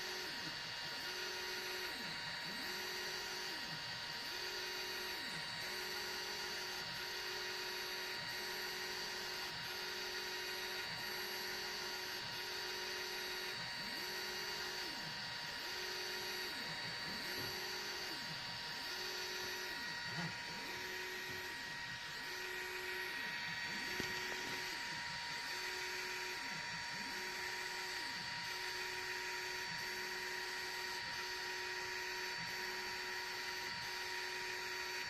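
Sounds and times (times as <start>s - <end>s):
steady high hum: 16.4s - 28.3s.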